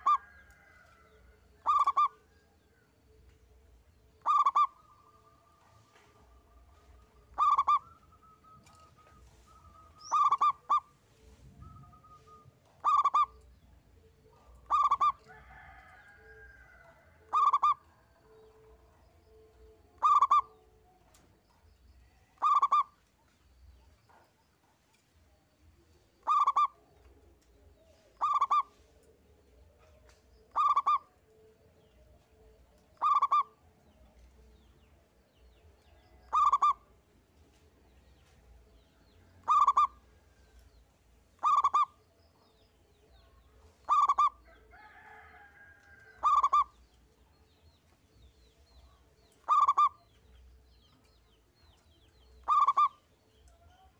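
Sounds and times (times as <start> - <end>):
dove cooing: 0.0 - 0.3, 1.6 - 2.2, 4.2 - 4.8, 7.3 - 7.9, 10.0 - 10.9, 12.8 - 13.4, 14.6 - 15.2, 17.3 - 17.8, 20.0 - 20.5, 26.2 - 26.7, 28.2 - 28.7, 33.0 - 33.5, 39.4 - 40.0, 41.4 - 41.9, 43.9 - 44.4, 46.2 - 46.7, 49.4 - 50.0, 52.4 - 52.9
faint bird calls: 1.6 - 2.3, 4.2 - 5.1, 7.3 - 11.0, 11.6 - 13.5, 14.6 - 15.7, 20.0 - 20.6, 22.3 - 23.1, 26.2 - 26.8, 28.0 - 28.9, 30.5 - 31.2, 33.0 - 33.6, 36.3 - 36.9, 39.4 - 40.0, 41.4 - 42.0, 43.8 - 44.6, 46.2 - 46.8, 49.3 - 50.2, 52.4 - 53.1.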